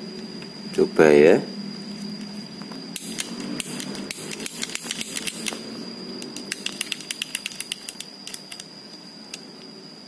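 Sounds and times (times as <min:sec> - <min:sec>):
bike shifter clicking: 0:03.0 - 0:05.6, 0:06.2 - 0:08.7.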